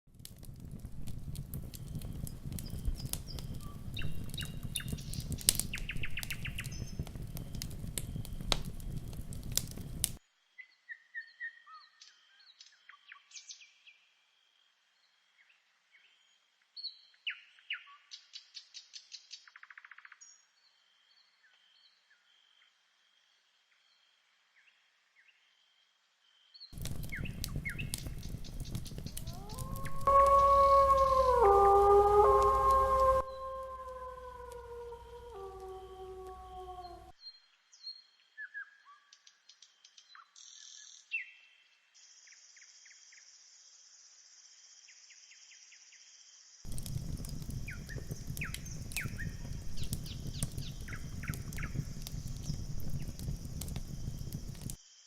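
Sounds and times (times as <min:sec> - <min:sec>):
campfire crackling and popping: 0:00.1 - 0:10.2, 0:26.8 - 0:37.1, 0:46.7 - 0:54.8
long howl: 0:00.8 - 0:10.2, 0:26.8 - 0:37.2, 0:46.7 - 0:54.8
faint steady high tone: 0:29.2 - 0:37.0.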